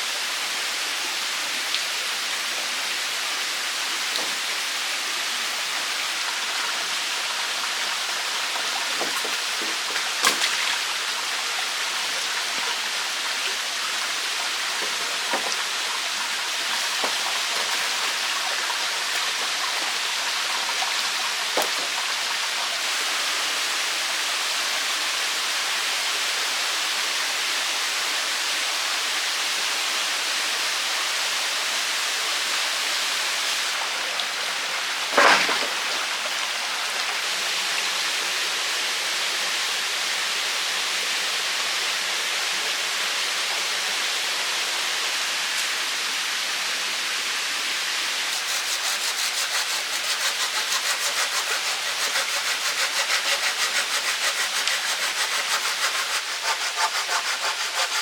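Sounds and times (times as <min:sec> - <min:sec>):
running water: 0:00.0 - 0:58.0
hand saw cutting wood: 0:08.8 - 0:10.7, 0:14.8 - 0:15.7, 0:21.6 - 0:22.1, 0:35.1 - 0:35.9, 0:48.3 - 0:58.0.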